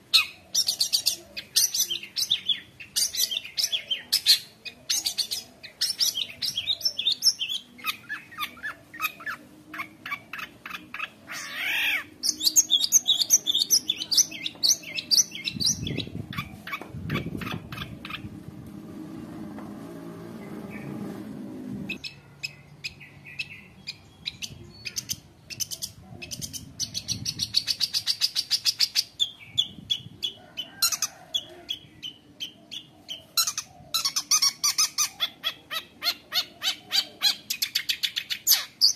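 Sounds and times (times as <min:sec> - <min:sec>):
shrike singing chattering song: 0:00.0 - 0:18.5.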